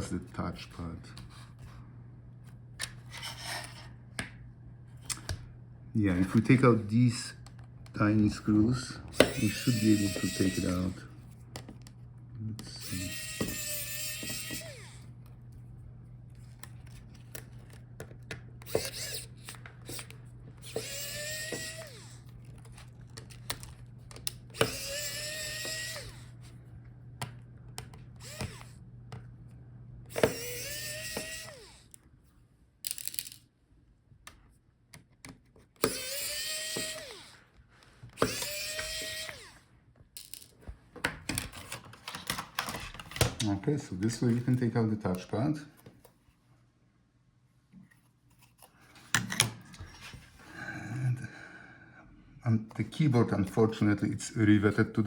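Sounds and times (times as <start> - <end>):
electric screwdriver motor whirring: 9.1 - 11.1, 12.6 - 15.1, 18.6 - 26.4, 28.2 - 28.8, 30.1 - 32.0, 35.8 - 37.5, 38.2 - 39.6.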